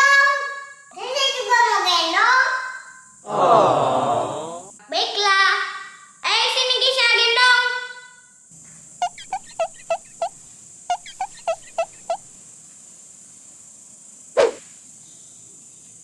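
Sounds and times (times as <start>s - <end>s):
bird-like gobbling calls: 9.0s - 12.3s, 14.4s - 14.6s
sharp whoosh: 14.4s - 14.6s.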